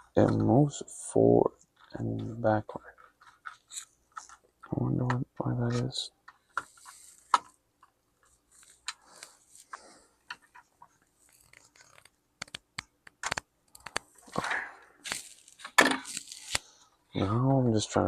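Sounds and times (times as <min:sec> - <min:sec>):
laptop parts clicking and scraping: 0:01.5 - 0:04.8, 0:05.7 - 0:14.4, 0:15.0 - 0:16.9.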